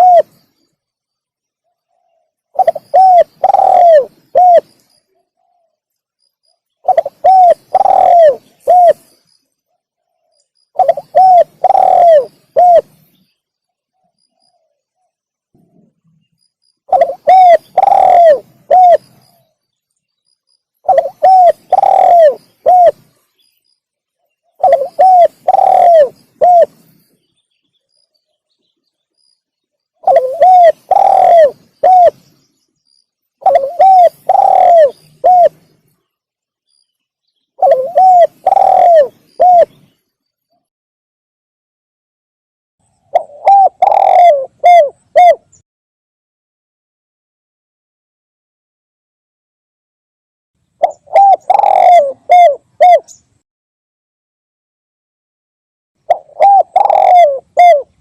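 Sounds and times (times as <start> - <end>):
dove cooing: 0.0 - 0.4, 1.7 - 5.8, 6.8 - 9.2, 10.0 - 13.1, 16.9 - 19.5, 20.8 - 23.2, 24.5 - 26.9, 30.0 - 32.4, 33.4 - 35.8, 37.6 - 40.0, 43.1 - 45.6, 50.8 - 53.2, 56.1 - 58.0.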